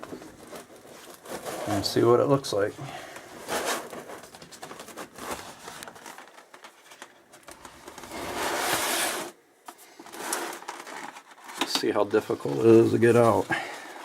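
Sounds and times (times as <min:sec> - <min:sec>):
cardboard box rustling: 0:10.0 - 0:14.0.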